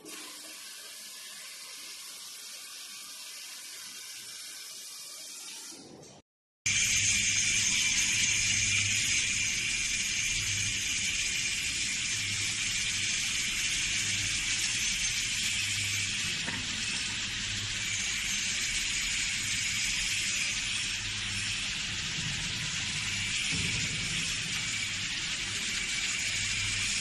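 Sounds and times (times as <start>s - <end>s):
machine high hiss: 6.7s - 27.0s.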